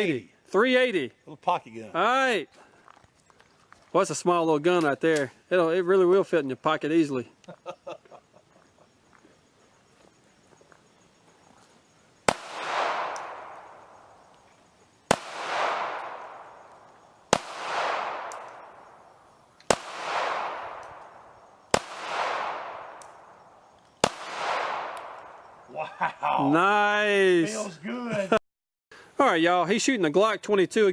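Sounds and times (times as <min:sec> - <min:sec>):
rolling gunshot echo: 0:12.3 - 0:13.9, 0:15.1 - 0:16.6, 0:17.3 - 0:18.9, 0:19.7 - 0:23.4, 0:24.0 - 0:25.4
pistol shots: 0:12.3 - 0:14.2, 0:15.1 - 0:19.0, 0:19.6 - 0:25.6.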